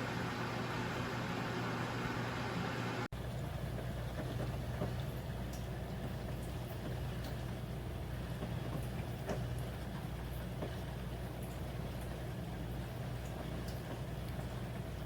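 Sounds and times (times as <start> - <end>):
dishwasher motor hum: 0.0 - 15.0.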